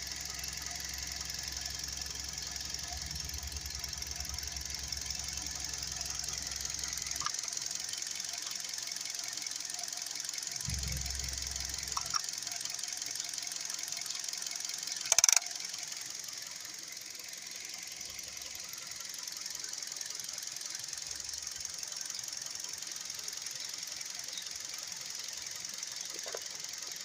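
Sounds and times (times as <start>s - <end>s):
car engine idling with ticking: 0.0s - 27.0s
loud clatter: 10.7s - 12.2s.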